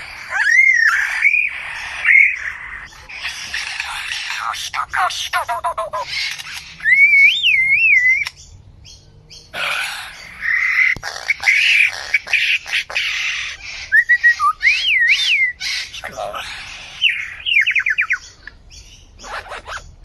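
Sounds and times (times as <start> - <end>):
harsh bird chattering calls: 0.0 - 20.0
bird singing warbling whistles: 6.8 - 8.5, 13.6 - 15.7, 17.0 - 18.4.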